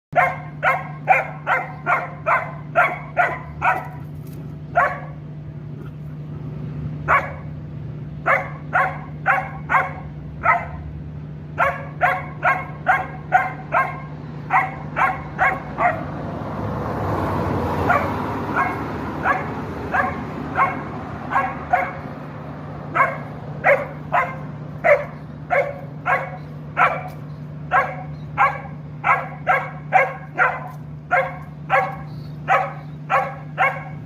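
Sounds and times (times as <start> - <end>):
dog barking: 0.1 - 4.1, 4.7 - 5.2, 7.1 - 7.5, 8.2 - 10.8, 11.6 - 16.1, 17.8 - 22.2, 22.9 - 34.0
steady low hum: 0.2 - 16.9, 17.5 - 34.0.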